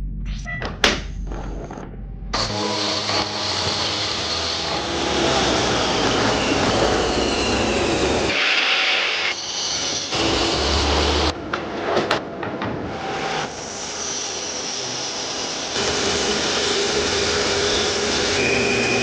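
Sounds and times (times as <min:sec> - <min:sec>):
power tool motor whine: 0:02.4 - 0:11.3, 0:13.3 - 0:19.0
cutting wood noise: 0:02.4 - 0:19.0.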